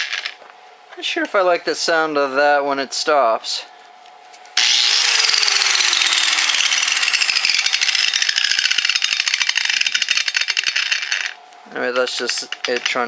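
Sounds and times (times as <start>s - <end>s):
angle grinder winding down: 4.6s - 11.4s
fast clicking rattle: 5.3s - 11.4s, 12.2s - 13.0s.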